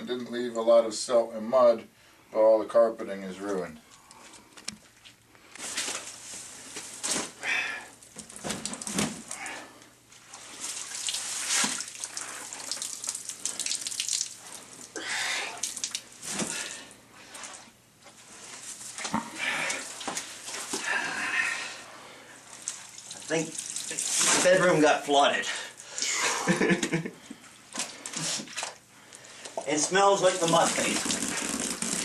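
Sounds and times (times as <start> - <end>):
wet carpet squelching: 30.3 - 32.0.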